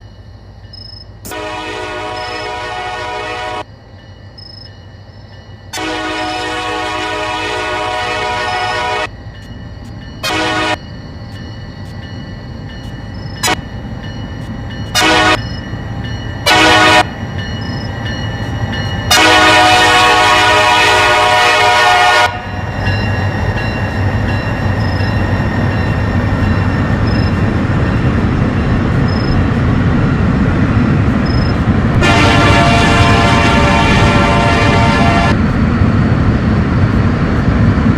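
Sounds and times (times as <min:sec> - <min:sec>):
diesel locomotives rumbling: 0:00.0 - 0:37.9
locomotive air horn blasts: 0:01.3 - 0:03.6, 0:05.8 - 0:09.1, 0:10.2 - 0:10.8, 0:15.0 - 0:15.4, 0:16.4 - 0:17.1, 0:19.1 - 0:22.6, 0:31.9 - 0:35.4.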